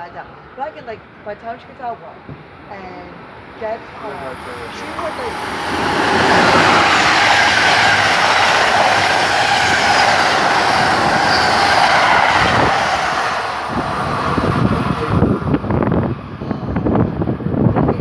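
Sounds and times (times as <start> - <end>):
train passing at speed: 0.0 - 18.0
high wheel squeal: 3.9 - 15.8.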